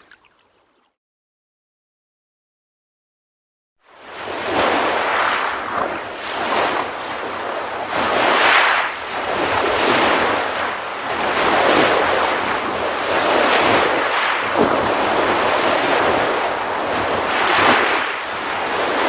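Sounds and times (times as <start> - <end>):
sea waves breaking: 3.9 - 19.0.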